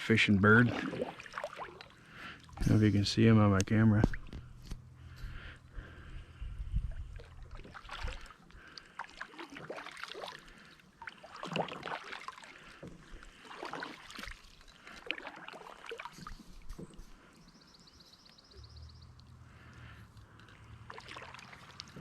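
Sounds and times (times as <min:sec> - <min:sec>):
paddle splashing in water: 0:00.5 - 0:02.7, 0:07.2 - 0:17.3, 0:20.5 - 0:22.0.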